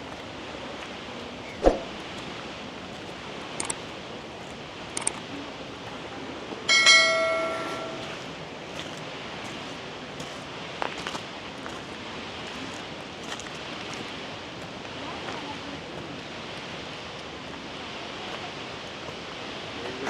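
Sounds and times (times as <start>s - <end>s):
steady rushing noise: 0.0s - 10.8s
light clicks: 5.0s - 5.2s
metallic ring: 6.7s - 8.3s.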